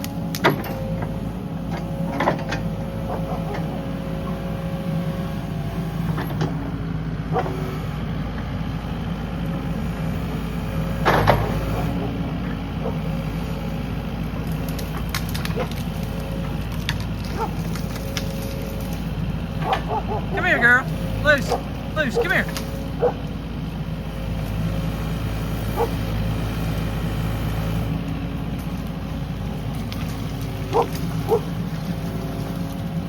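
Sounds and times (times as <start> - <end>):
excavator diesel engine running: 0.0 - 33.0
wood cracking and snapping: 14.3 - 20.0, 28.0 - 33.0.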